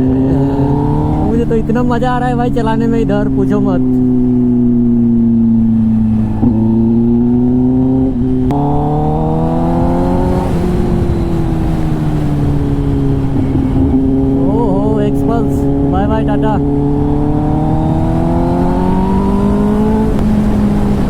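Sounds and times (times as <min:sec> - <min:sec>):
sport bike engine revving: 0:00.0 - 0:21.0.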